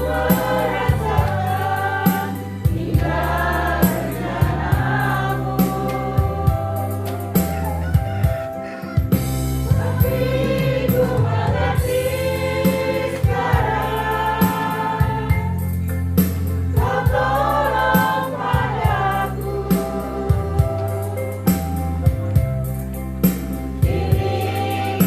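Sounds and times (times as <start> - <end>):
group singing praise song: 0.0 - 8.0, 9.5 - 15.8, 16.6 - 22.1, 23.7 - 25.0
instrumental backing with bass: 0.0 - 25.0.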